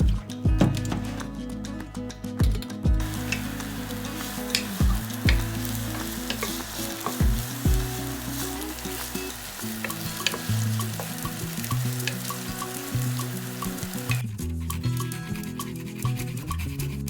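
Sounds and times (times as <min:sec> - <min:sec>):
food sizzling in frying pan: 0:03.0 - 0:14.3
utensil clicking against pan: 0:03.0 - 0:16.6.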